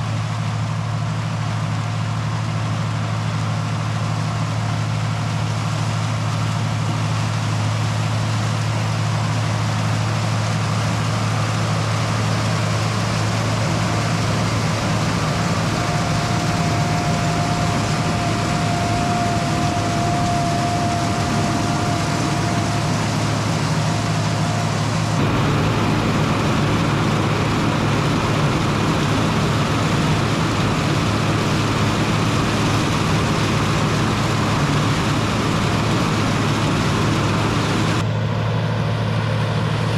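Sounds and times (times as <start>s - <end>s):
tractor engine running: 2.2s - 38.2s
thin high whine: 13.3s - 38.0s.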